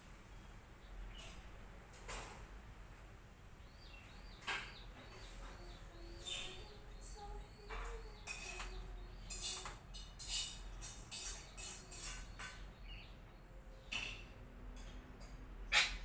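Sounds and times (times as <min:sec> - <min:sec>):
parakeets screeching: 0:15.7 - 0:16.0.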